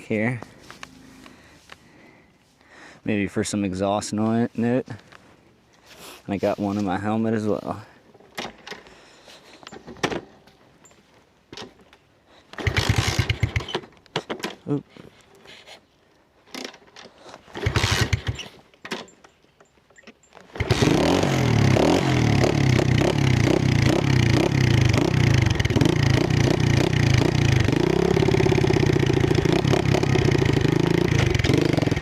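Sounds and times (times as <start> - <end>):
motorcycle engine running: 20.6 - 32.0.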